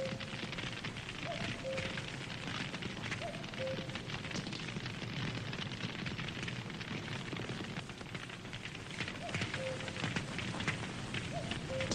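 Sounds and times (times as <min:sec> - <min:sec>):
campfire crackling and popping: 0:00.0 - 0:11.9
low rumble of flames: 0:00.0 - 0:11.9.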